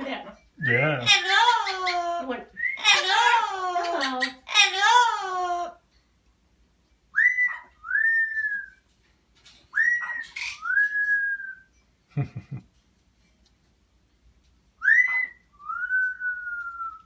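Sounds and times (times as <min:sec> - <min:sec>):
parrot whistling: 0:07.1 - 0:08.8, 0:09.7 - 0:11.7, 0:14.8 - 0:17.0.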